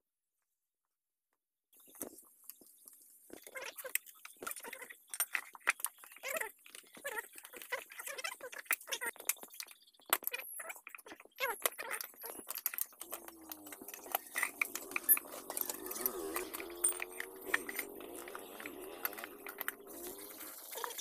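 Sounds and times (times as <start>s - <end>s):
rubber tyre squeaking: 10.3s - 21.0s
tyre levers clicking on rim: 12.5s - 21.0s.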